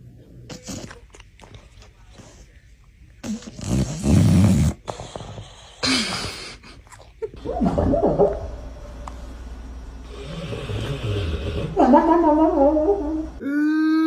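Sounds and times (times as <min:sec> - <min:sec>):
dog snoring and snorting: 0:00.5 - 0:01.1, 0:03.2 - 0:06.8, 0:10.0 - 0:12.0.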